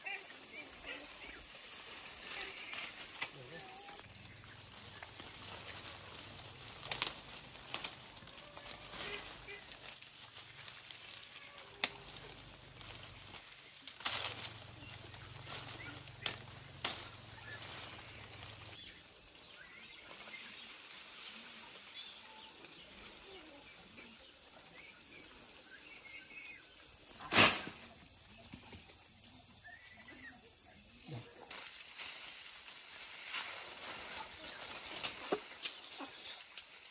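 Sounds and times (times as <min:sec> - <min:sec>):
high-pitched hiss: 0:00.0 - 0:24.0.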